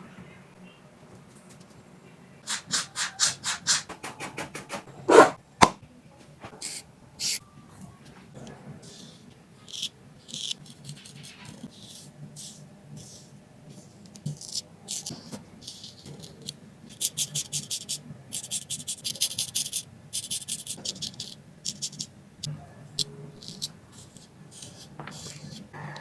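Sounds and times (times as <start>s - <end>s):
razor scraping stubble: 23.0s - 25.7s.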